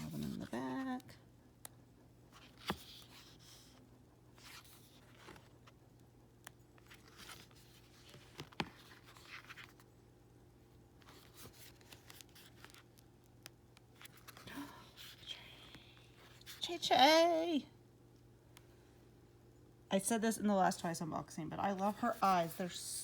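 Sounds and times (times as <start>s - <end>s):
pages rustling: 2.3s - 5.8s, 6.4s - 9.9s, 11.0s - 16.6s.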